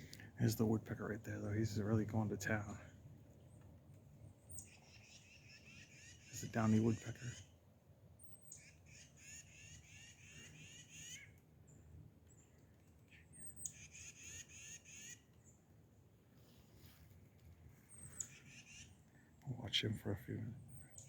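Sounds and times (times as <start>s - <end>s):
songbird trills: 2.5s - 7.6s, 8.2s - 15.7s, 17.8s - 21.0s.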